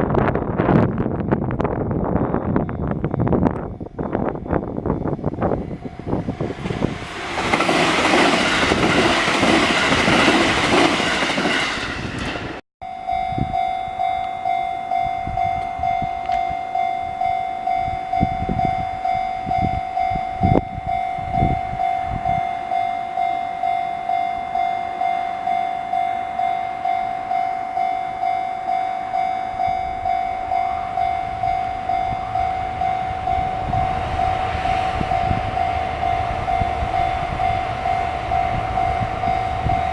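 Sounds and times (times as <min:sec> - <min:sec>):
low rumbles: 0:00.0 - 0:11.0
train passing with squeal: 0:01.9 - 0:39.9
level crossing alarm ringing: 0:12.8 - 0:39.9.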